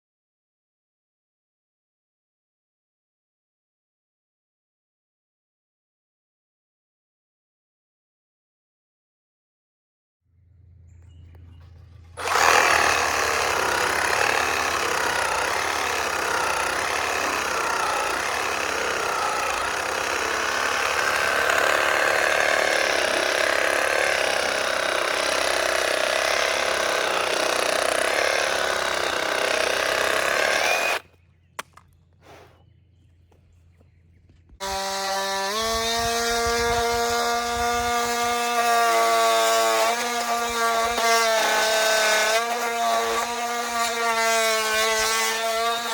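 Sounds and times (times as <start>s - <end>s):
power saw cutting wood: 12.1s - 31.8s, 34.6s - 45.9s.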